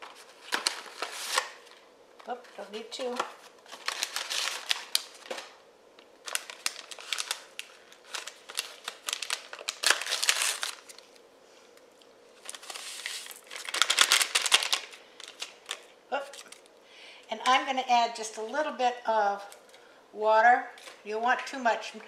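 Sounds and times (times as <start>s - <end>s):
packet crinkling: 0.0s - 11.3s, 12.4s - 16.8s.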